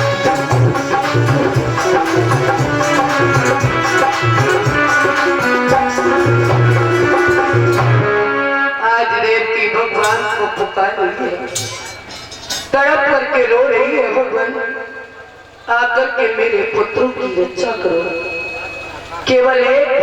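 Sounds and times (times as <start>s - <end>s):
hand drums: 0.0s - 8.2s, 10.0s - 12.8s
held melody: 0.0s - 8.7s, 9.9s - 13.0s.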